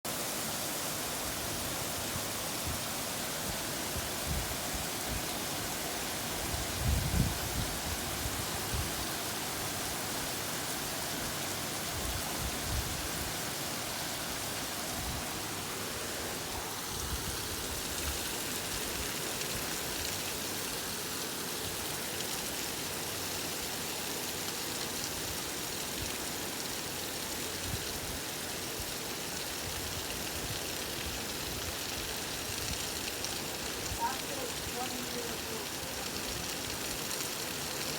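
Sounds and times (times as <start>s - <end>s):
heavy rain pouring: 0.0s - 37.9s.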